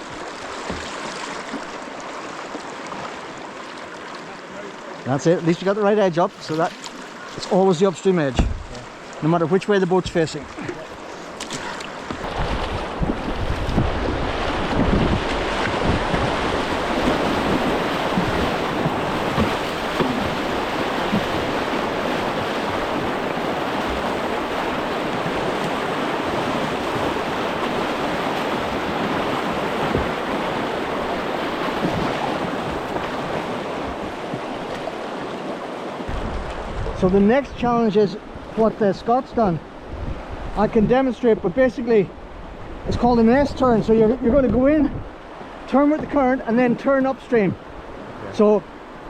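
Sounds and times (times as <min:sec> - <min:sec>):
river flowing: 0:00.0 - 0:40.6, 0:45.0 - 0:49.0
wind buffeting microphone: 0:12.1 - 0:34.5, 0:36.1 - 0:38.5, 0:39.4 - 0:41.0, 0:42.1 - 0:45.6.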